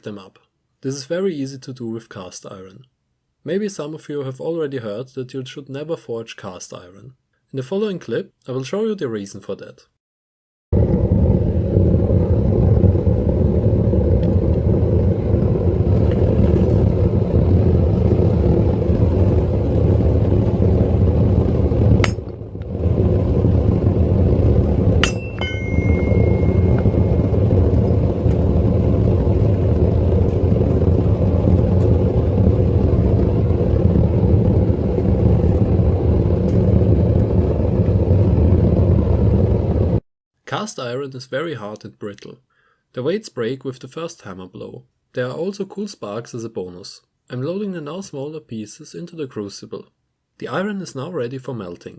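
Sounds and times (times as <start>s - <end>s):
furnace burner rumbling: 10.7s - 40.0s
sharp metallic clink: 25.0s - 26.8s.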